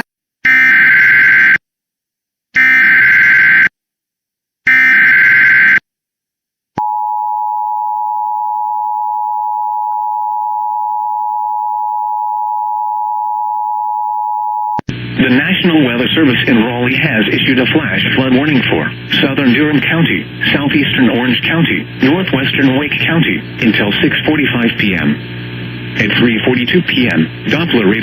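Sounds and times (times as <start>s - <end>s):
two-tone attention signal: 6.8s - 14.8s.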